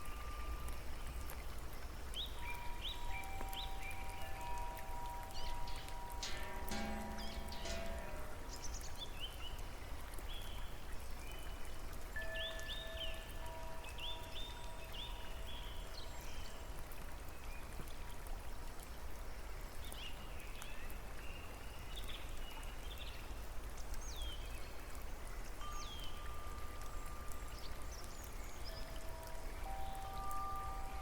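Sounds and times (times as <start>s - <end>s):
birds chirping: 0.0s - 9.7s
soft held musical notes: 0.0s - 10.6s, 24.9s - 31.0s
running water: 0.0s - 31.0s.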